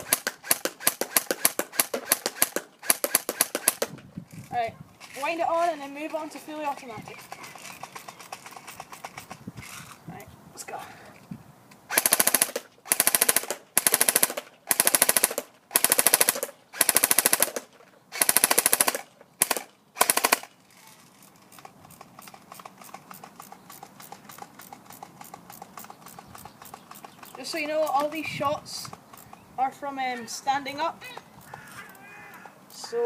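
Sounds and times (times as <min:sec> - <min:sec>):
airsoft gun firing bursts: 0:00.0 - 0:04.0, 0:11.9 - 0:20.5
faint rapid clicking: 0:21.2 - 0:28.1.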